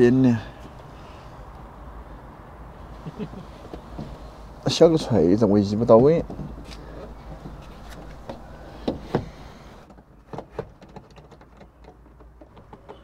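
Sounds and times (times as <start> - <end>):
sharp knocks on car parts: 7.3 - 13.0.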